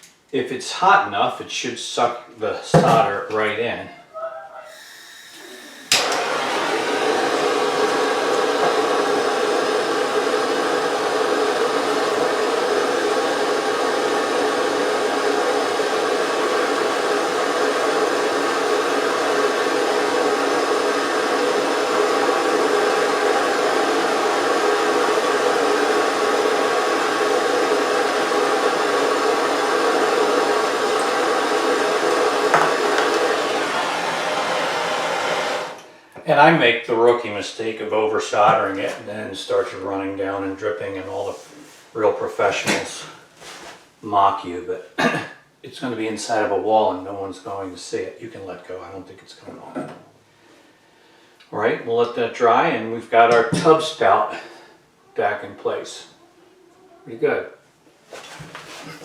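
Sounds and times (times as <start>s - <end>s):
torch flame hissing: 4.8s - 36.0s
torch ignition click: 5.9s - 6.4s.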